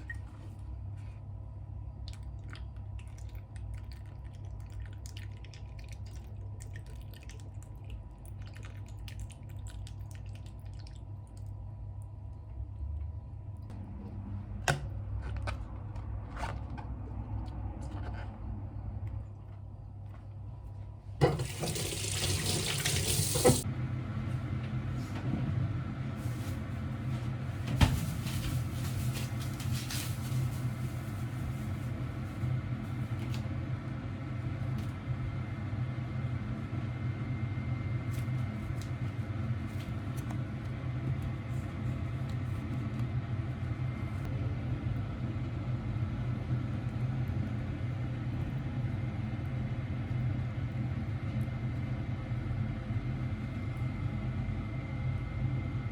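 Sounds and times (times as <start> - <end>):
low machine hum: 0.0 - 55.9
running water: 21.2 - 23.6.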